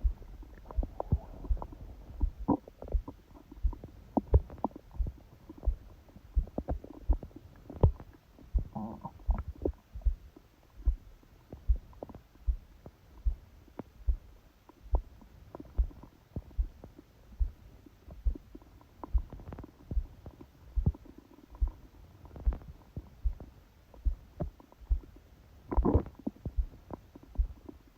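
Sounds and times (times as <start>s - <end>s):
heartbeat thumping: 0.0s - 27.7s
stomach gurgle: 0.0s - 27.9s.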